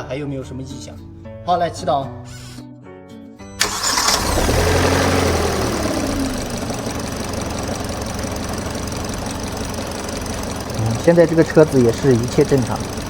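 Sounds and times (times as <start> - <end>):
car engine starting and idling: 3.6 - 13.0.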